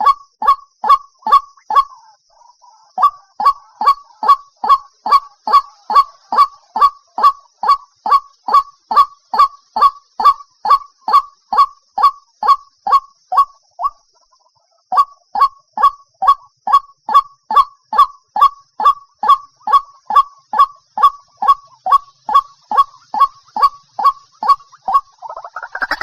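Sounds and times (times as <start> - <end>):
waterhen repeated call: 0.0 - 26.0.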